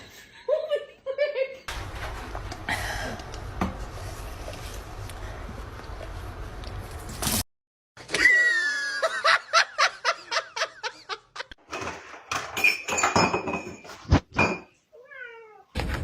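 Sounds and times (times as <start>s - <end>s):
person laughing: 8.1s - 11.6s.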